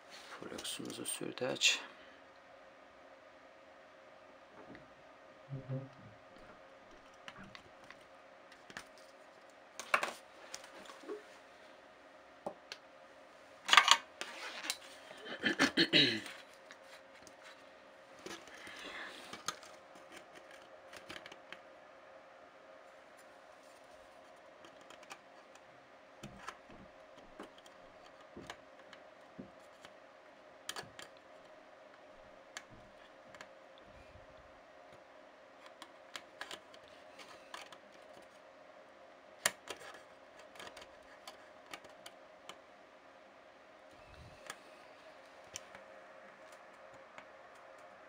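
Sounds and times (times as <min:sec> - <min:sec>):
faint steady hum: 0:00.0 - 0:48.0.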